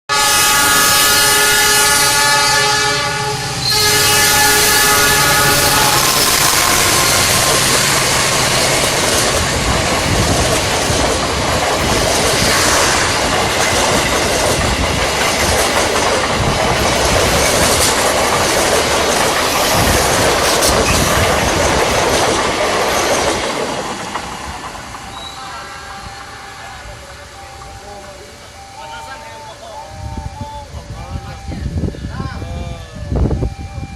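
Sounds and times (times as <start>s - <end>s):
passenger train rushing past: 0.1s - 33.9s
wheels clattering over rail joints: 4.4s - 28.5s.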